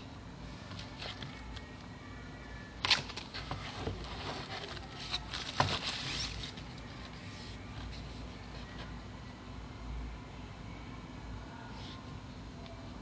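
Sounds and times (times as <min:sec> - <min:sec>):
hands handling packaging: 0:02.8 - 0:08.9.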